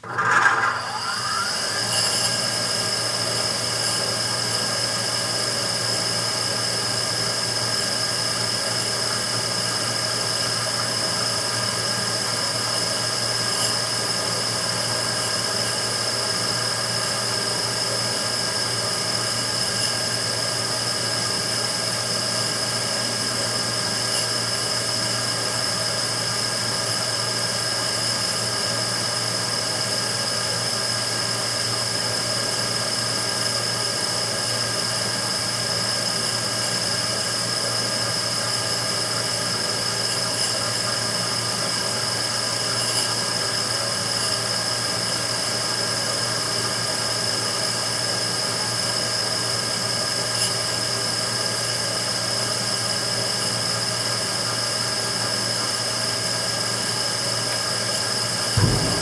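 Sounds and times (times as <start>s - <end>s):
burner whine and hum: 57.4s - 59.0s.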